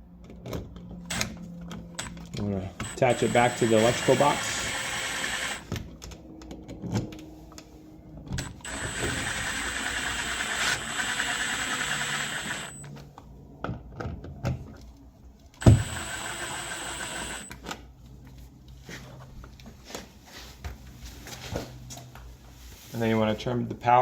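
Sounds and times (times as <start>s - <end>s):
cordless drill whirring: 2.8s - 5.7s, 8.4s - 12.9s, 15.6s - 17.6s.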